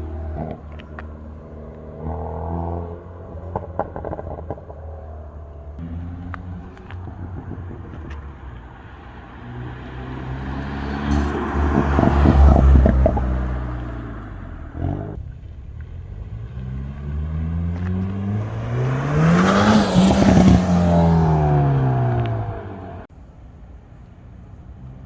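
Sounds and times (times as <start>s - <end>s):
turbocharged engine revving: 9.8s - 15.3s, 16.1s - 23.1s.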